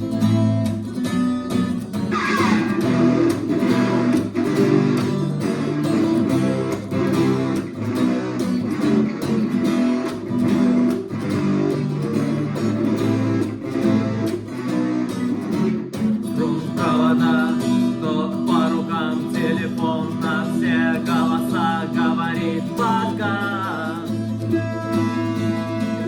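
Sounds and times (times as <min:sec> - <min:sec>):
rock guitars strumming: 0:00.0 - 0:26.0.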